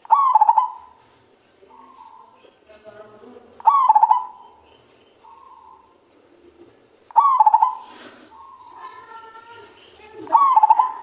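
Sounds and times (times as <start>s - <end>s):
dove cooing: 0.0s - 1.0s, 3.6s - 4.5s, 5.2s - 11.0s.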